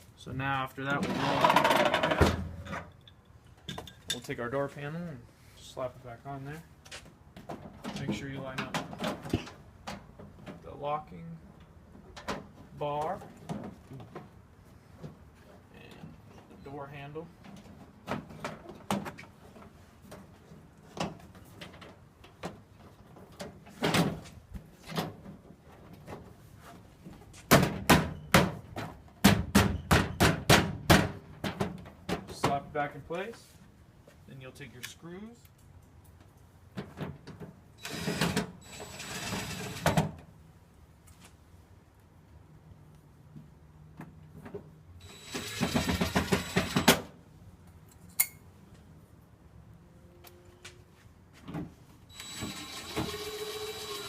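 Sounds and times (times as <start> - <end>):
power screwdriver rattling: 52.1 - 54.0.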